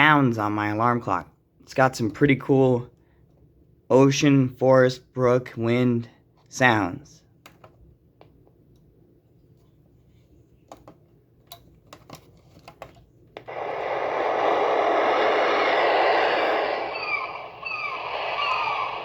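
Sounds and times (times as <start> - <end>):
recorded surf through small speaker: 12.8 - 19.0
bird calls: 14.6 - 19.0.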